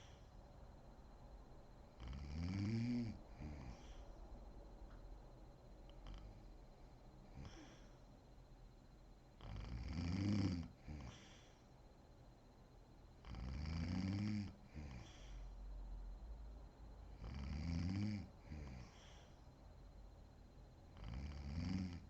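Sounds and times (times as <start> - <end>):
woman snoring: 2.0 - 4.0, 6.0 - 6.5, 7.3 - 7.9, 9.4 - 11.5, 13.3 - 15.4, 17.2 - 19.2, 21.0 - 22.0.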